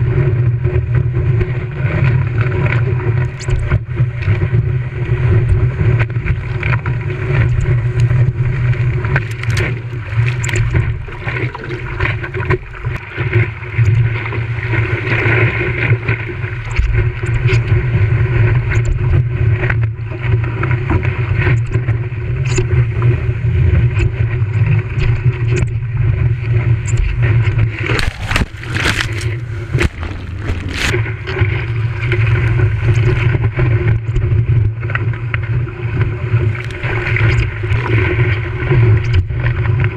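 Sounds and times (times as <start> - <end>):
water sloshing around paddleboard: 27.1 - 33.6, 34.8 - 39.9
choppy surf: 27.7 - 33.4
sharp splashes or knocks: 27.8 - 31.8.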